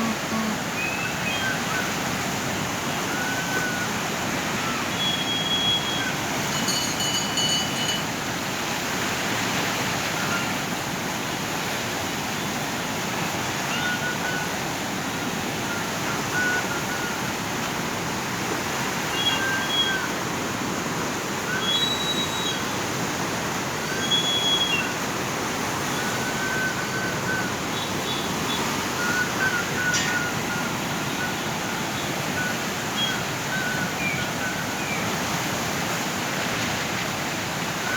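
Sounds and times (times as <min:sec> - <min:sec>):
floodwater rushing: 0:00.0 - 0:37.9
high whistle-like chirps: 0:21.5 - 0:22.6.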